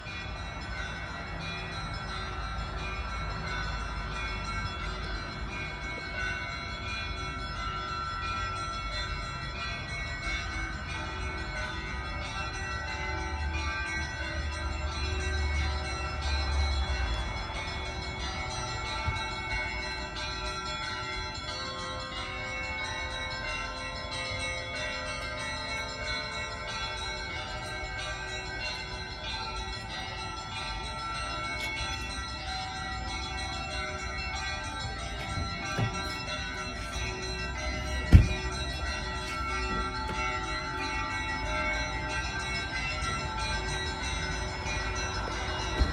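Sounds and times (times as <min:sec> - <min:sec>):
church bells pealing: 0:00.0 - 0:45.9.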